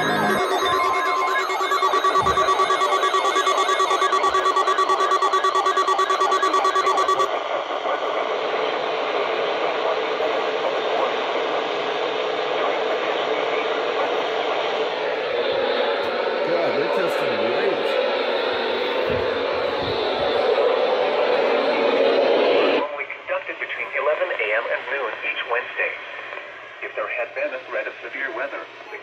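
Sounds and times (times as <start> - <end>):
electronic alert tone warbling: 0.0 - 7.3.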